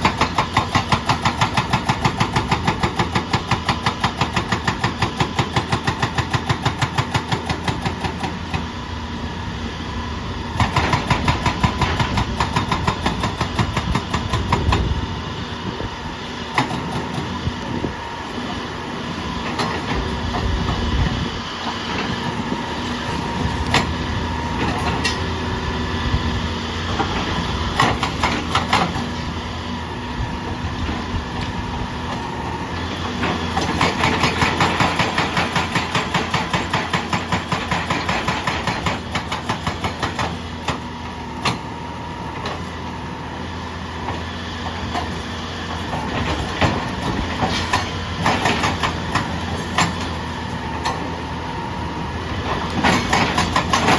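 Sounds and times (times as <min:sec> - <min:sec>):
hydraulic breaker hammer pounding: 0:00.0 - 0:08.7, 0:10.6 - 0:15.0, 0:16.5 - 0:17.9, 0:26.9 - 0:29.2, 0:33.0 - 0:41.7, 0:45.8 - 0:50.2, 0:52.5 - 0:53.9
excavator engine running: 0:00.0 - 0:53.9.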